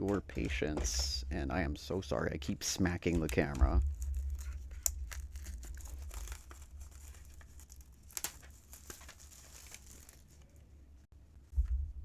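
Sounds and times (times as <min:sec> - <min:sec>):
plastic wrap crackling: 0:03.0 - 0:11.0.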